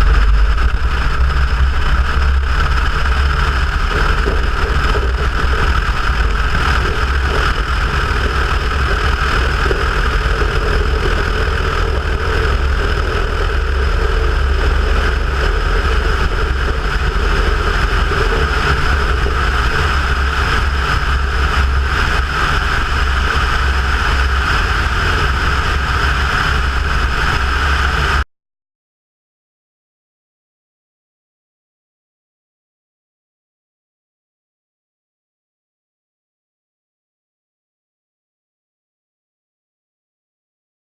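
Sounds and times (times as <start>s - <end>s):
plane engine and propeller: 0.0s - 28.2s.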